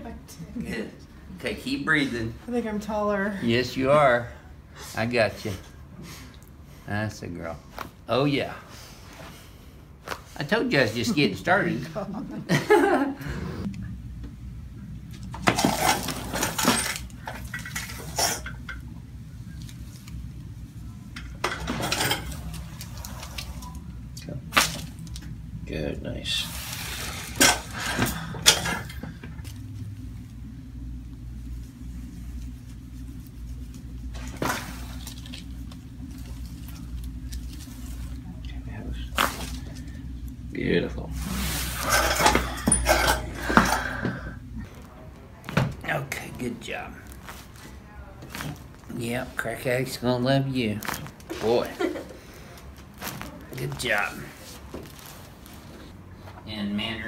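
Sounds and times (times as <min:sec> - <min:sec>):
low background hum: 0:00.0 - 0:57.0
sharp crack of chiropractic adjustment: 0:24.5 - 0:25.2, 0:39.1 - 0:39.7.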